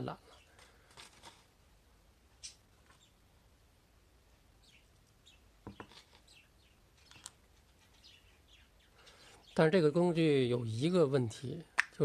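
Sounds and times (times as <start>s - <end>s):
faint bird chirps: 2.4s - 3.2s, 4.6s - 10.0s.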